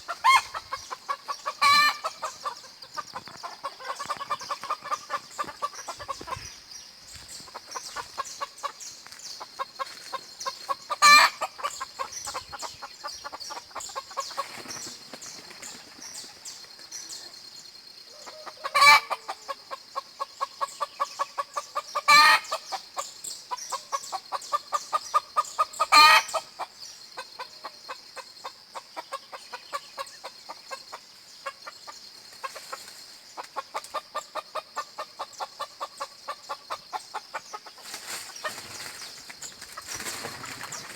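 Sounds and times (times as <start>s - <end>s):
chickens clucking: 0.0s - 15.0s, 18.2s - 40.9s
birdsong: 0.0s - 40.9s
loud short chicken calls: 1.5s - 2.3s, 11.0s - 11.5s, 22.1s - 22.5s, 25.9s - 26.4s.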